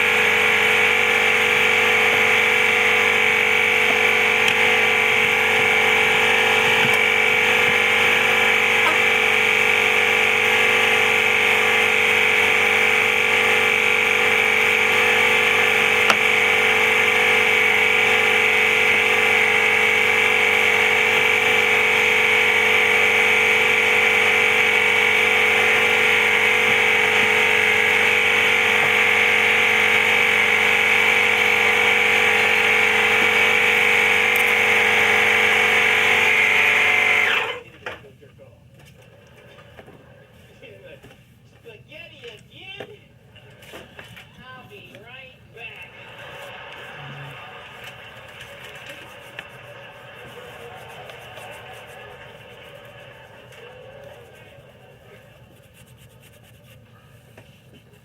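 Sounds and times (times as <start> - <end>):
small electric motor whining: 0.0 - 37.6.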